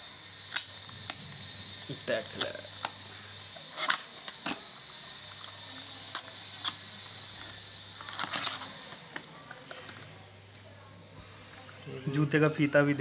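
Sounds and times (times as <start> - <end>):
steady high hiss: 0.0 - 9.4
packaging rustling and clicking: 8.0 - 10.1.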